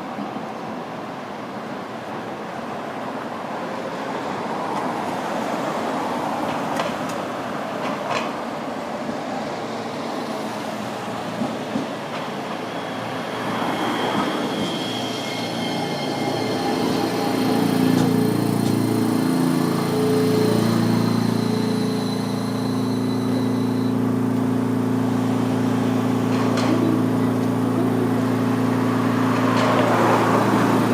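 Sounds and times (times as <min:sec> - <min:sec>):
streetcar rumbling on rails: 0:00.0 - 0:30.9
thin high whine: 0:12.5 - 0:27.3.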